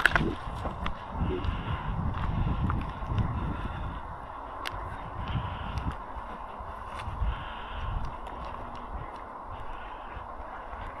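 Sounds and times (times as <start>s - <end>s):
footsteps: 4.4s - 11.0s.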